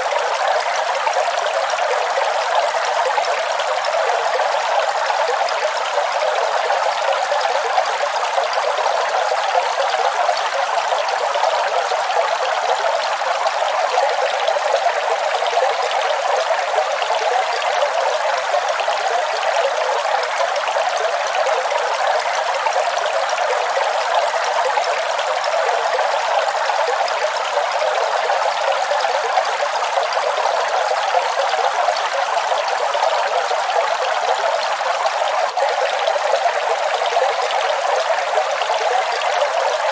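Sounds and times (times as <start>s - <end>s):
waterfall rushing: 0.0s - 4.1s, 24.3s - 39.9s.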